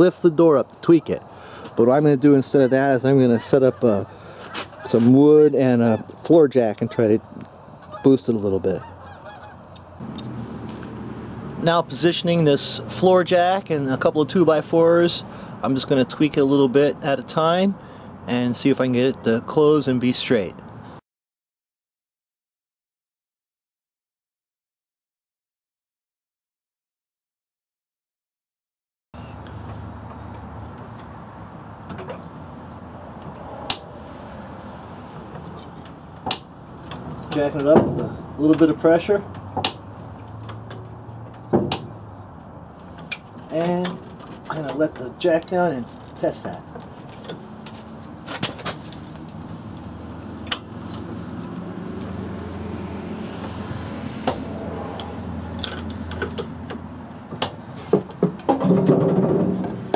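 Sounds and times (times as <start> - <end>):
metal and wood clicks and knocks: 35.2 - 42.0, 42.8 - 52.1, 55.0 - 59.9.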